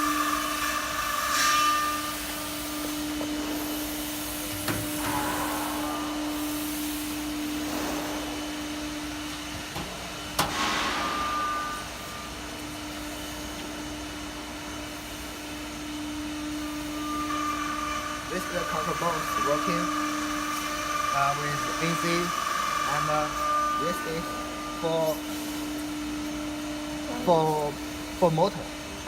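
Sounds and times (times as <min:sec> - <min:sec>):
machine hum: 0:00.0 - 0:29.0
hiss: 0:00.6 - 0:08.7.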